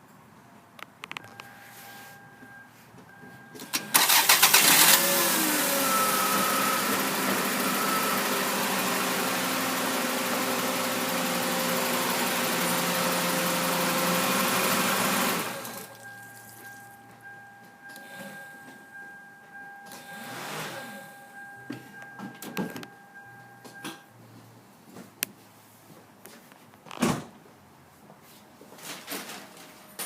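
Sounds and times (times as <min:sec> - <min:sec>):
starter cranking engine: 0:03.7 - 0:09.0
car engine idling: 0:03.7 - 0:16.9.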